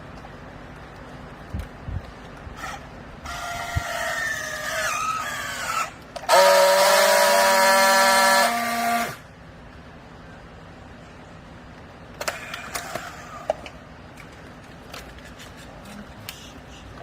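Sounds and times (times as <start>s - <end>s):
hydraulic baler whining: 2.6s - 9.3s.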